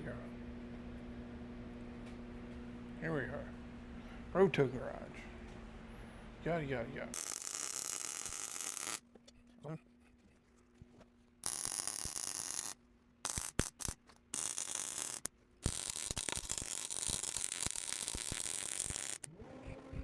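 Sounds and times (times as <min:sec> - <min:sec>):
low steady hum: 0:00.0 - 0:07.2, 0:19.3 - 0:20.0
welding arc crackling: 0:07.2 - 0:09.0, 0:11.4 - 0:19.3.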